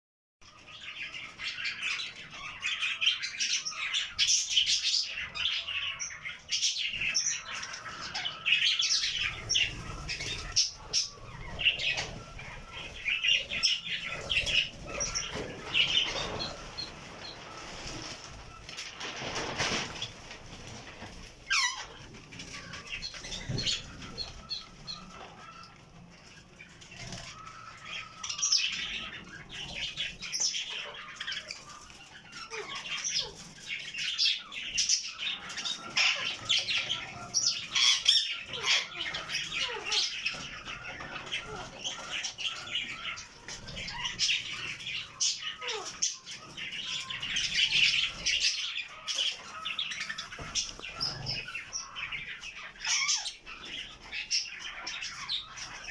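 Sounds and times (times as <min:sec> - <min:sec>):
budgerigars chattering: 0:00.5 - 0:18.6, 0:20.7 - 0:55.9
wing fluttering: 0:09.2 - 0:24.4.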